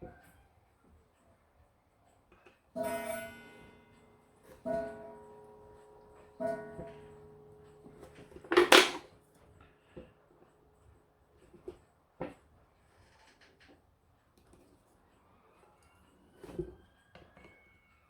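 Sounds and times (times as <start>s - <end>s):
clock striking: 2.8s - 9.1s.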